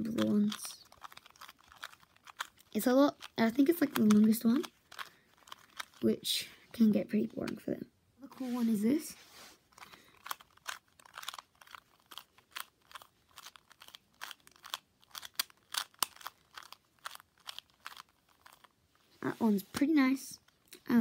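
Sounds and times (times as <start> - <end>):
puzzle cube plastic clicks: 0.0 - 6.0, 9.7 - 18.8.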